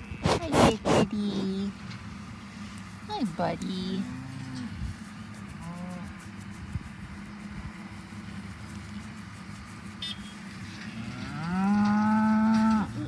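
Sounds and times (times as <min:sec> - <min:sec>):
cow mooing: 0:10.8 - 0:12.9.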